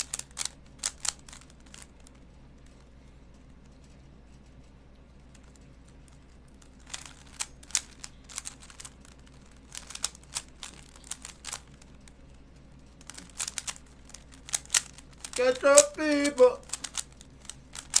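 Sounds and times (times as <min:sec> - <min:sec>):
puzzle cube twisting clicks: 0:00.0 - 0:02.1, 0:05.3 - 0:12.2, 0:13.0 - 0:18.0.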